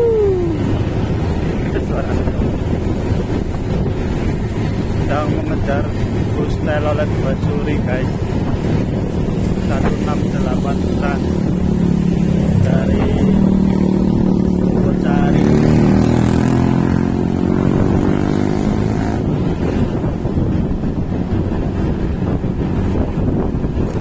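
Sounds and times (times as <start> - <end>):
wind buffeting microphone: 0.0 - 24.0
vehicle engine running: 0.4 - 18.0.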